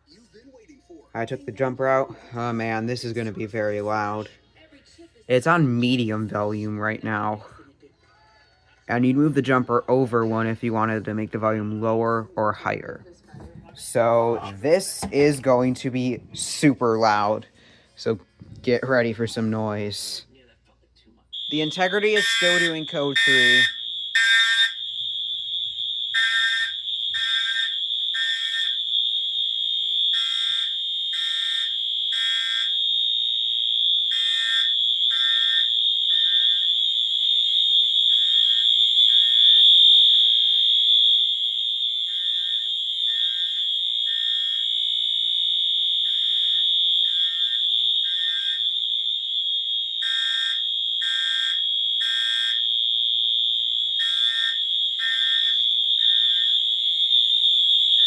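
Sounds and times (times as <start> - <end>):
continuous fire alarm horn: 13.4 - 17.8, 21.3 - 58.0
fire alarm horn blasts: 13.8 - 17.3, 21.3 - 58.0.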